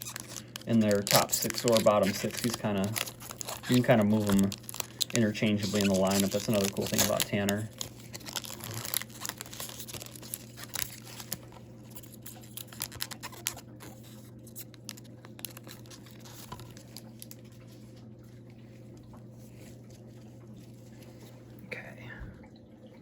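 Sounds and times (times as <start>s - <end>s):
wrapper crinkling and tearing: 0.0s - 17.8s
cards being handled: 0.0s - 17.9s.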